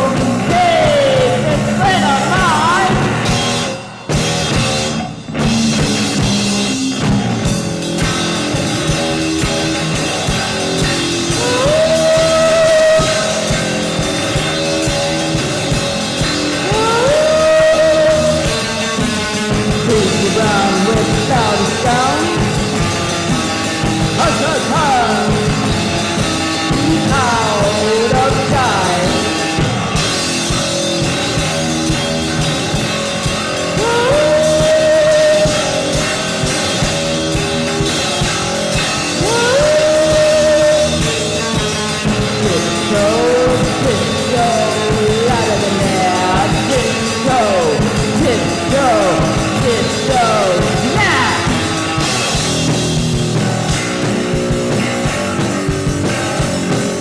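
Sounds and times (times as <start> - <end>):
drum kit: 0.0 - 57.0
goth rock band playing: 0.0 - 57.0.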